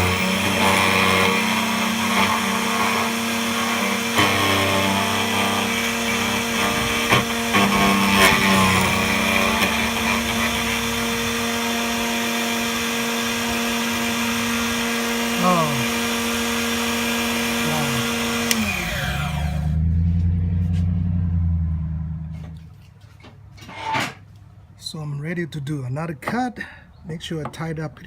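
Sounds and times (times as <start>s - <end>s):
cutter milling key blank: 0.0s - 19.6s
key cutting machine motor humming: 0.0s - 19.7s.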